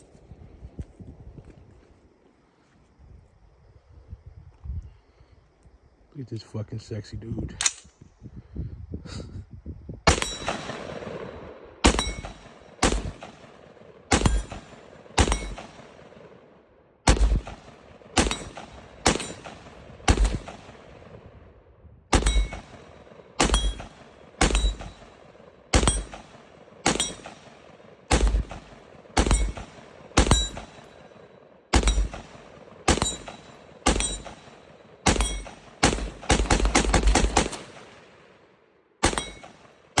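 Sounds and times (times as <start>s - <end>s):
rifle shots with ringing echo: 10.1s - 21.4s, 22.1s - 40.0s.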